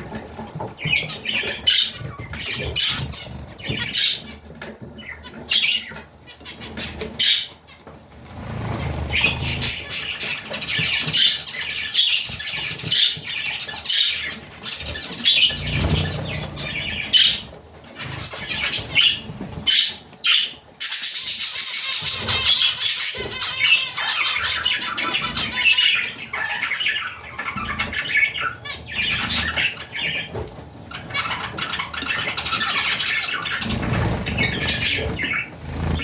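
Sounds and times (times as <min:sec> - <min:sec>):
budgerigars chattering: 0:00.8 - 0:07.7, 0:08.4 - 0:36.0.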